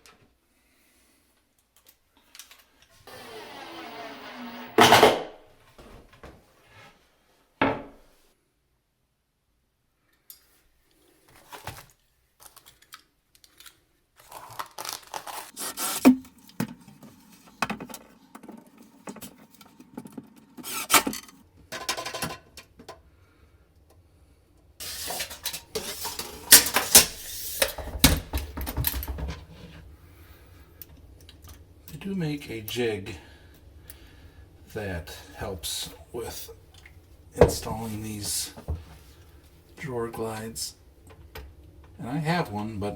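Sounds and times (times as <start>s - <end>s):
wood and metal parts clattering: 20.0s - 23.0s, 24.8s - 29.8s.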